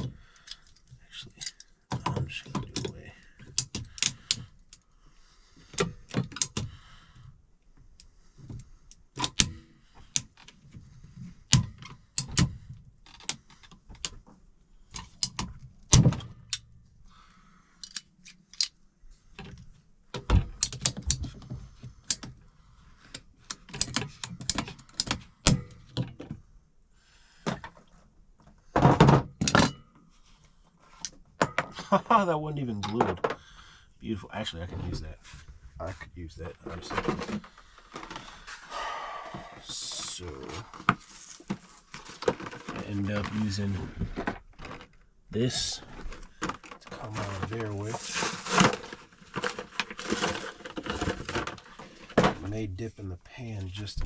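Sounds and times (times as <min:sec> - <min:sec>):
plastic pipe fittings clicking and knocking: 0:00.0 - 0:04.8, 0:05.7 - 0:06.7, 0:11.5 - 0:16.7, 0:17.8 - 0:22.4, 0:23.0 - 0:26.4.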